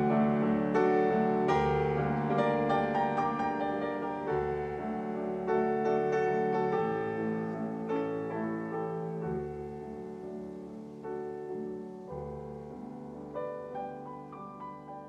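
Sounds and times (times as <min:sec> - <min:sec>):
gentle solo piano music: 0:00.0 - 0:15.0.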